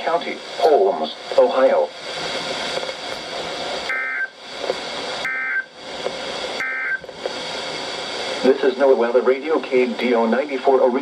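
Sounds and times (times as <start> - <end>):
radio hiss: 0.0 - 11.0
two-tone digital squawks: 5.2 - 5.7, 6.6 - 7.0.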